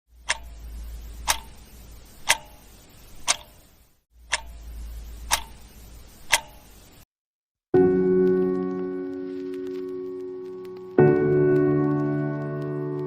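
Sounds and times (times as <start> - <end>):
low steady hum: 0.1 - 7.0
clock ticking: 0.2 - 6.9.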